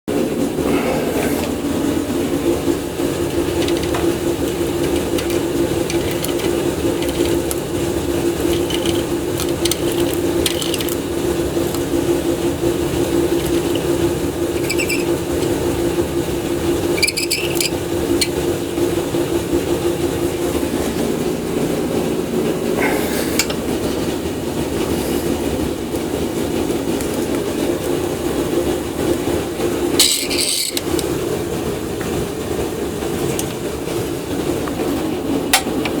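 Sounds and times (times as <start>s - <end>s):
welder humming: 0.6s - 18.7s.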